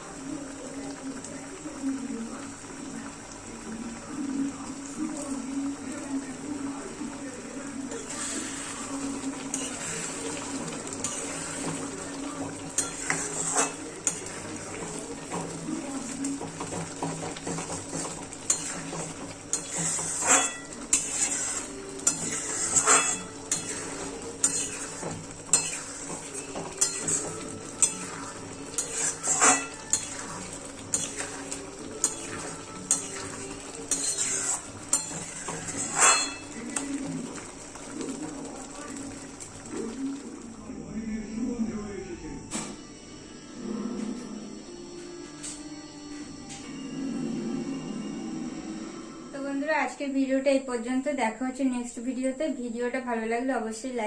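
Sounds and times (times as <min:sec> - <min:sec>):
food sizzling: 0:00.0 - 0:42.0
metal spatula scraping a pan: 0:07.9 - 0:15.6, 0:16.6 - 0:37.2.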